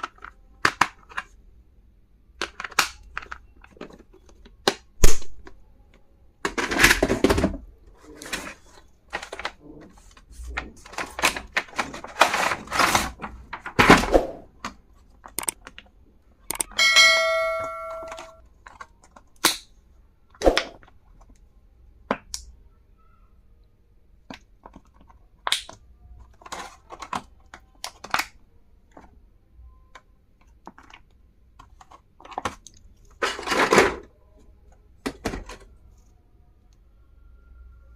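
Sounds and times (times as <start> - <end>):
stationery clicks and taps: 15.3 - 15.8, 16.4 - 16.8
metallic ring: 16.7 - 18.4.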